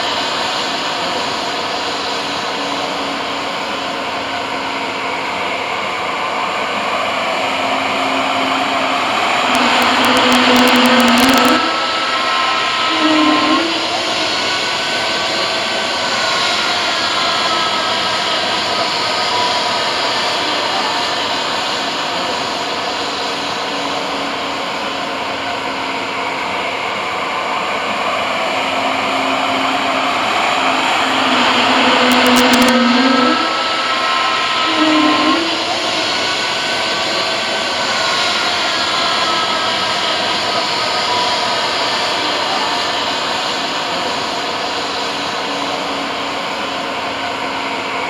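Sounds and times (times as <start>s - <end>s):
jet engines running: 0.0s - 12.9s, 26.7s - 34.7s.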